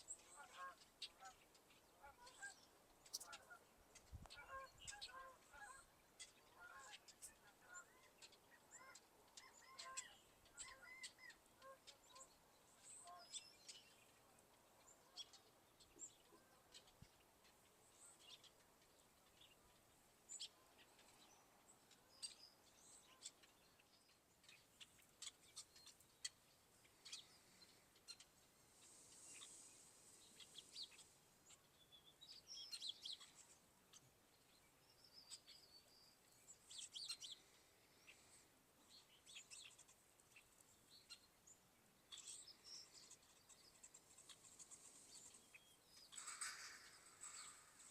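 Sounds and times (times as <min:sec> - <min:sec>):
lower bird calls: 0:00.0 - 0:14.2
songbirds chirping and trilling: 0:00.0 - 0:47.9.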